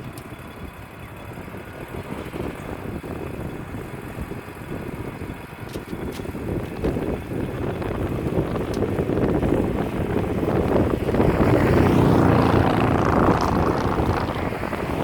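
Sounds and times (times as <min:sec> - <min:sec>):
band sawmill engine rumble: 0:00.0 - 0:15.0
wind buffeting microphone: 0:00.0 - 0:15.0.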